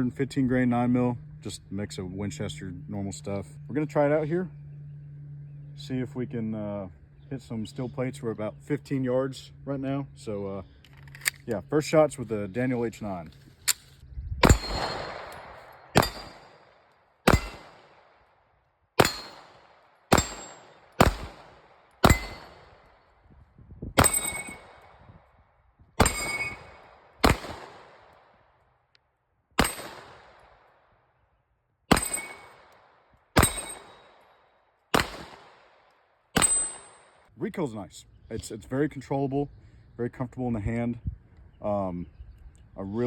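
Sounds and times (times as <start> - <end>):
pistol shots: 14.4 - 18.3, 19.0 - 23.0, 24.0 - 25.1, 26.0 - 28.4, 29.6 - 30.7, 31.9 - 34.3, 34.9 - 37.1
ringing hits on steel plate: 19.0 - 19.4, 20.2 - 20.7, 22.1 - 22.6, 24.0 - 24.7, 26.0 - 26.8, 33.4 - 34.0.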